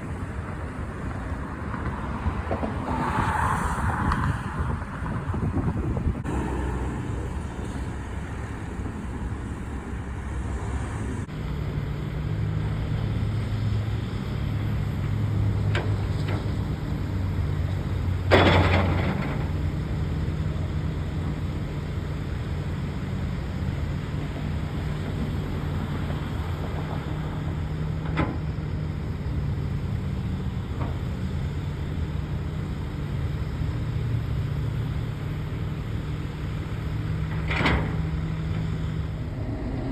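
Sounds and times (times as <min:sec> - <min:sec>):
diesel machinery engine hum: 0:00.0 - 0:39.9.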